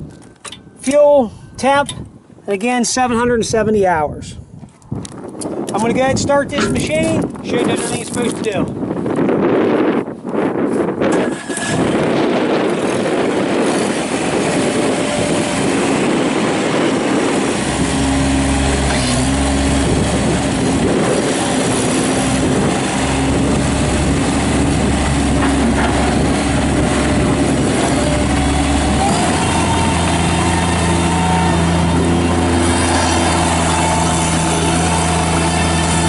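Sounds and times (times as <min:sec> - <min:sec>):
diesel engine running: 0:11.2 - 0:36.0
deep low rumble: 0:13.4 - 0:36.0.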